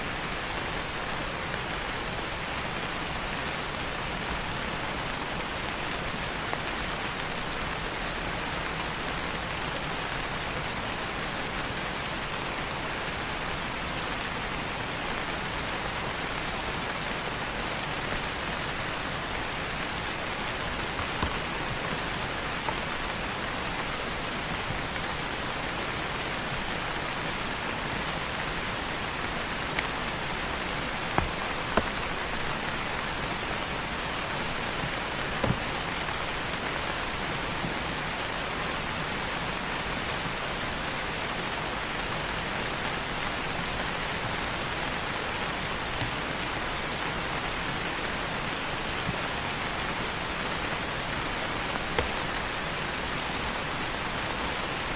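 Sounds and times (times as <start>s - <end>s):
rain falling on foliage: 0.0s - 54.9s
individual raindrops landing: 15.0s - 54.8s.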